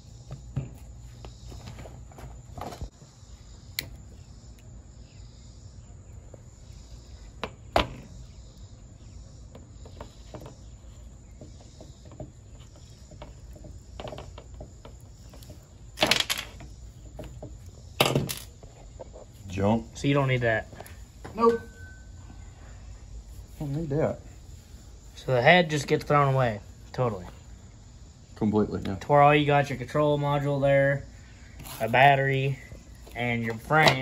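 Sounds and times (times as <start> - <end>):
crickets chirping: 0.0 - 34.0
parts clattering: 9.8 - 19.4.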